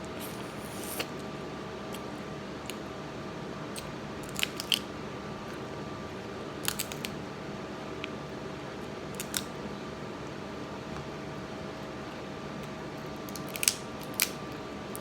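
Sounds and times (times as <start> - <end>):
steady hum: 0.0 - 4.3
crab shells cracking: 4.2 - 4.9, 6.6 - 7.2, 13.2 - 15.0.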